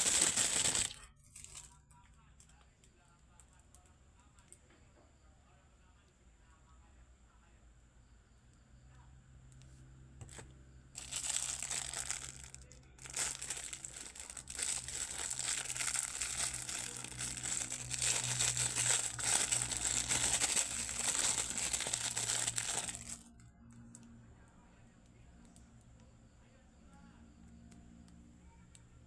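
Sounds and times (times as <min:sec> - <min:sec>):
packaging crinkling and tearing: 0:00.0 - 0:01.7, 0:11.0 - 0:23.3.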